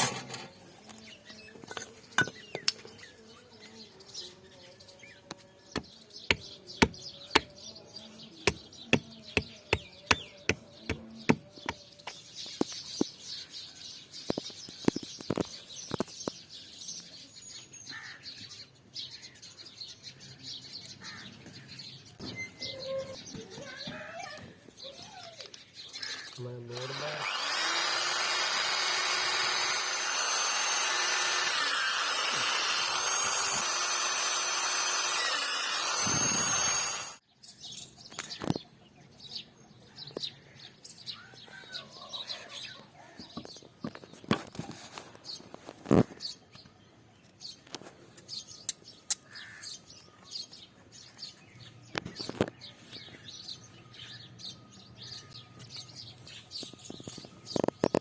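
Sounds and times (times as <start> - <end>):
faint bird chirping: 0.5 - 27.2
electric grinder running: 26.7 - 37.2.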